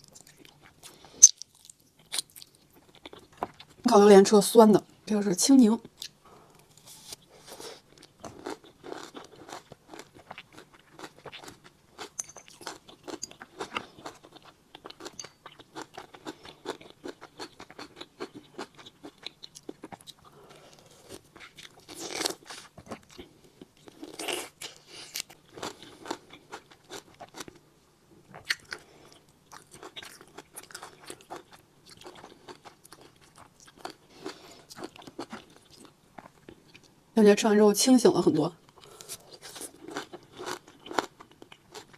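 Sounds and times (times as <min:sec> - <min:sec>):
person chewing lime: 0:00.0 - 0:03.8, 0:07.8 - 0:27.6, 0:28.3 - 0:36.9, 0:38.7 - 0:41.9.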